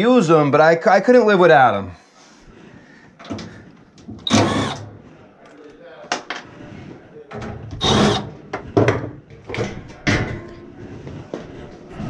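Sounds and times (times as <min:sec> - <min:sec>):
knocks and clatters: 0:07.3 - 0:10.7.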